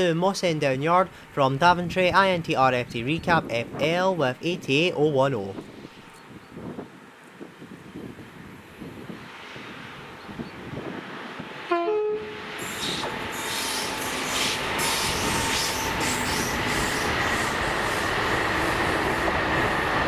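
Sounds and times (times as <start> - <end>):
freight train rumble: 0.0 - 20.0
wind buffeting microphone: 1.6 - 11.7, 14.0 - 20.0
two-tone locomotive horn: 11.7 - 13.8.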